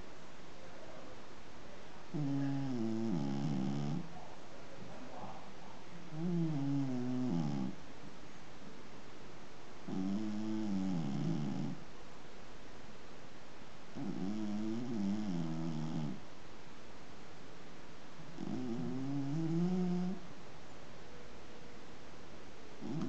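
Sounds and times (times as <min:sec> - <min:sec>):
cat snoring: 0:02.1 - 0:04.1, 0:06.1 - 0:07.8, 0:09.9 - 0:11.8, 0:14.0 - 0:16.2, 0:18.4 - 0:20.2, 0:22.8 - 0:23.0.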